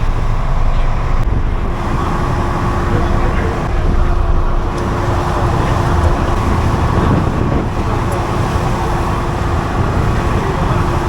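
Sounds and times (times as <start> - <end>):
engine droning: 0.0 - 11.0.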